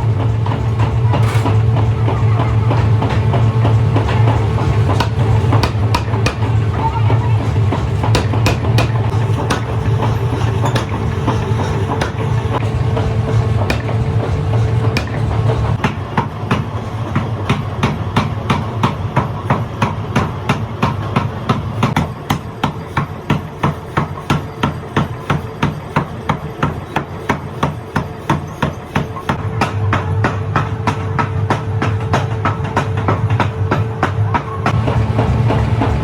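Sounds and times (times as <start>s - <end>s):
steady machine hum: 0.0s - 22.0s, 29.4s - 36.0s
hammer striking metal: 0.2s - 36.0s.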